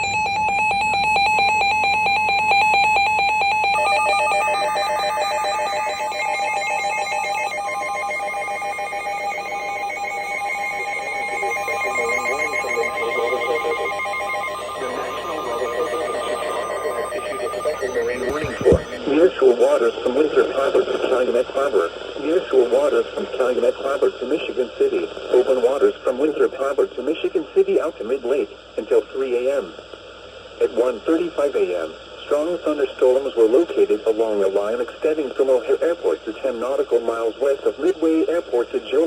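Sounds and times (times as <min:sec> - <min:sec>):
steady warning tone: 0:00.0 - 0:19.0
layered electronic alert tones: 0:03.8 - 0:19.0
warbling data bursts: 0:05.8 - 0:19.0.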